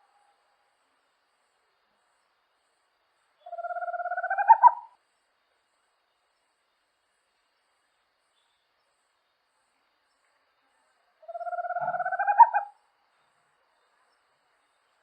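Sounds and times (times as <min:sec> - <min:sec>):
owl trilled call: 0:03.4 - 0:05.0, 0:11.2 - 0:12.8.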